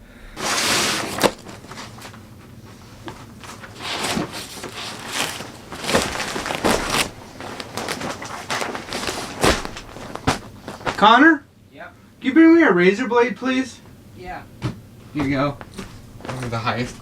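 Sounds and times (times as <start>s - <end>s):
shuffling footsteps: 0.4s - 11.2s, 13.8s - 17.0s
rustling and handling noises: 0.4s - 11.3s, 13.8s - 17.0s
sharp knocks: 14.6s - 16.5s.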